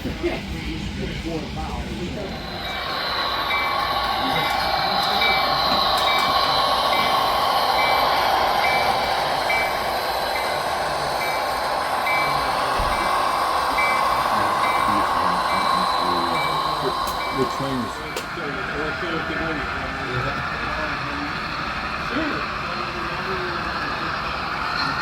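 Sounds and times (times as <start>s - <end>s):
model train running: 0.0s - 25.0s
pulsing high-pitched tone: 2.4s - 19.6s.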